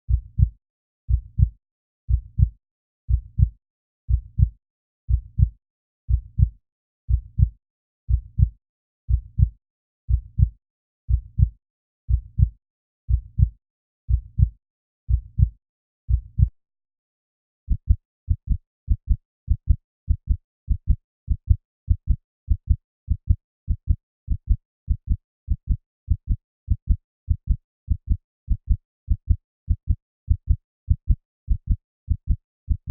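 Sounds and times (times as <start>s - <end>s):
heartbeat thumps: 0.1s - 0.5s, 1.1s - 1.5s, 2.1s - 2.5s, 3.1s - 3.5s, 17.7s - 32.9s.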